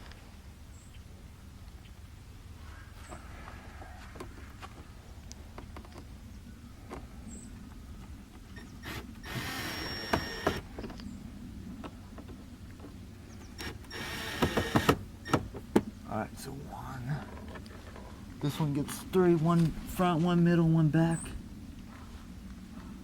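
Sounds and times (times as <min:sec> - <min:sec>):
cordless drill whirring: 0:08.6 - 0:10.7, 0:13.6 - 0:15.4.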